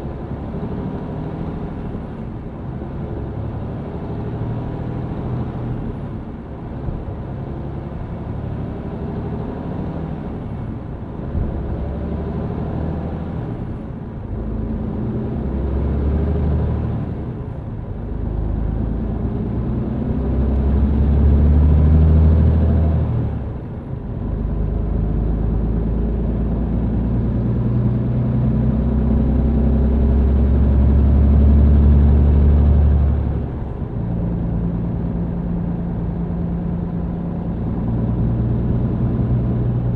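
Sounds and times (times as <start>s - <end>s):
truck diesel engine drone: 0.0s - 39.9s.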